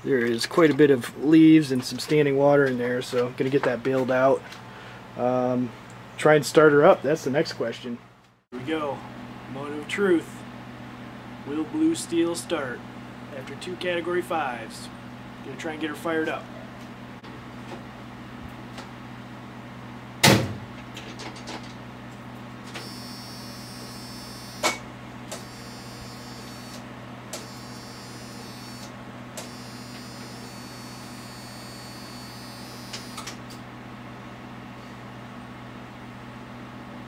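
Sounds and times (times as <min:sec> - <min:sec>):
steady hum: 0:00.0 - 0:20.8.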